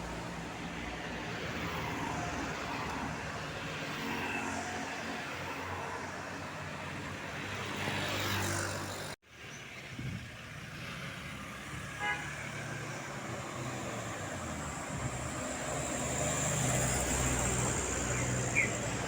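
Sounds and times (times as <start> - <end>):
heavy vehicle engines passing: 9.8 - 19.0.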